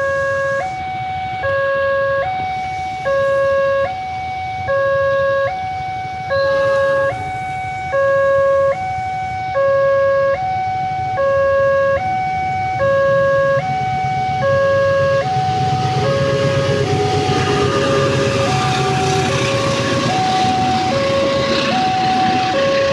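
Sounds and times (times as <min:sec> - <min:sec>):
level crossing two-tone alarm: 0:00.0 - 0:22.9
heavy rain rumble: 0:13.8 - 0:22.9.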